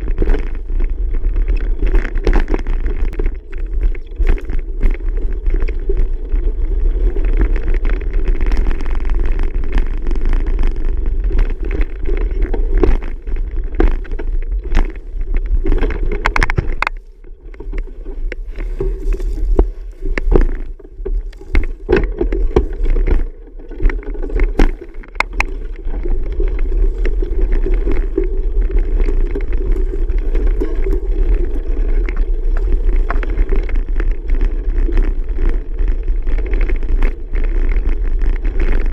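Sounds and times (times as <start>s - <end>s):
bicycle clicks and rattles: 0.0s - 38.9s
bicycle rolling rumble: 0.0s - 38.9s.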